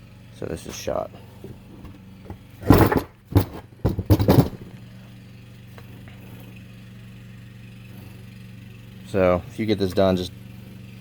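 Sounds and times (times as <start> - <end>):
lawnmower engine humming: 0.0 - 11.0
metal knocks and clatters: 1.4 - 4.8.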